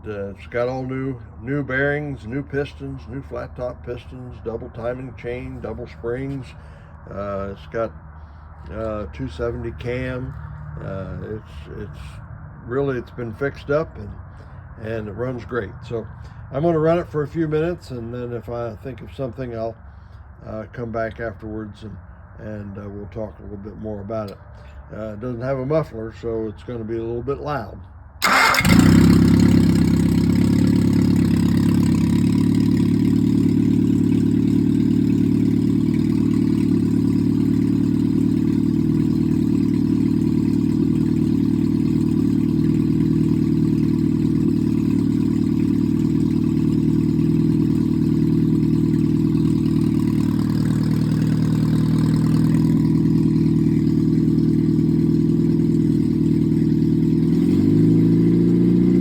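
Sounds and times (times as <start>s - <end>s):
loud engine running without muffler: 28.2s - 59.0s.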